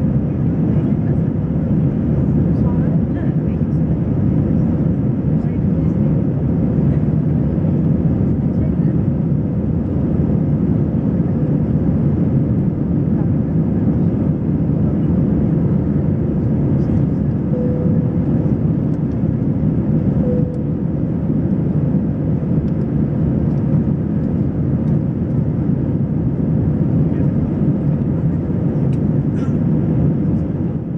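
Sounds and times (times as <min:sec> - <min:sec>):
aircraft engines and airflow rumble: 0:00.0 - 0:30.9
faint steady hum: 0:17.5 - 0:21.4.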